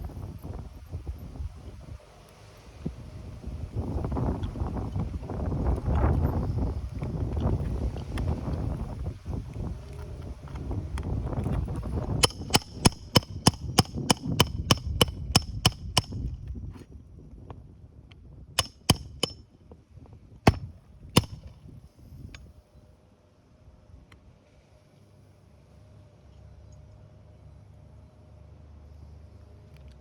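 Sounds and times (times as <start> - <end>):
wind buffeting microphone: 0.0 - 2.0, 2.7 - 19.4
hammer blows with metallic ring: 12.2 - 16.3, 18.6 - 19.4, 20.5 - 21.5.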